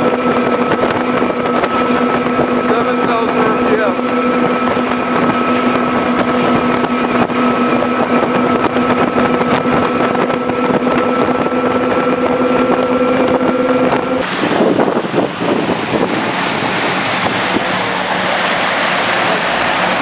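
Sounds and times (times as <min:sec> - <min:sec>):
outboard engines at full throttle: 0:00.0 - 0:20.0
wind and water rushing: 0:00.0 - 0:20.0.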